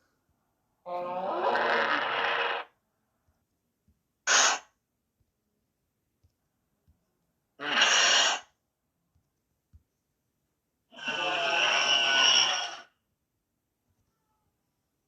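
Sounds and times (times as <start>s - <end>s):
breath-like hissing effects: 4.3s - 4.7s.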